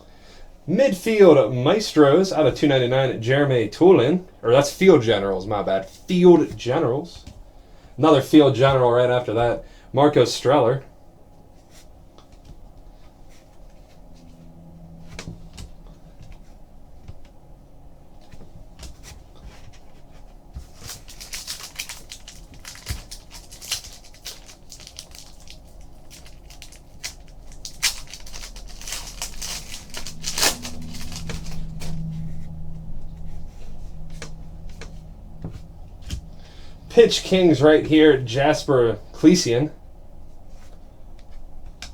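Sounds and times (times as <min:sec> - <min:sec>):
low steady hum: 0:00.0 - 0:41.9
card rustling: 0:19.0 - 0:32.5
trading cards clicking and slapping: 0:20.6 - 0:32.1.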